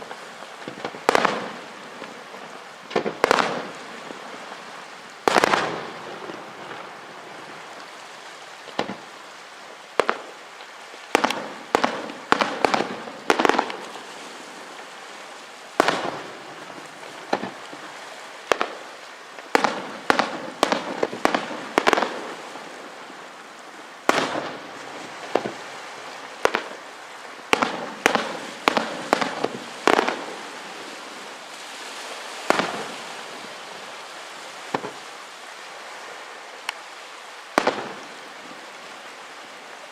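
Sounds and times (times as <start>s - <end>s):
fireworks crackling and hissing: 0.0s - 39.9s
fireworks bangs: 0.6s - 7.6s, 8.7s - 9.1s, 10.0s - 10.4s, 11.1s - 14.9s, 15.8s - 23.0s, 24.1s - 26.8s, 27.5s - 31.8s, 32.4s - 33.8s, 34.7s - 35.1s, 37.6s - 38.2s.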